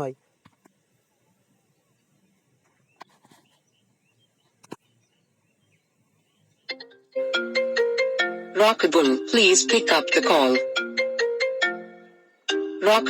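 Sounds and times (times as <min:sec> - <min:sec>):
phone ringtone melody: 0:06.7 - 0:13.0.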